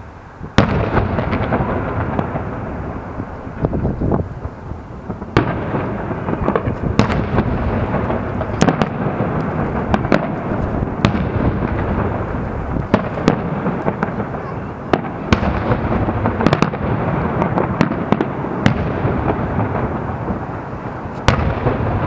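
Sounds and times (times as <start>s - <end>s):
fireworks cracking: 0.0s - 22.0s
low rumble of bursts: 0.8s - 17.4s.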